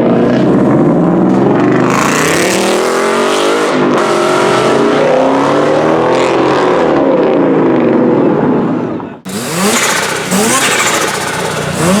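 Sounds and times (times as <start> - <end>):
car engine revving quickly: 1.7 - 7.0, 9.3 - 12.0
car engine accelerating hard: 9.3 - 12.0.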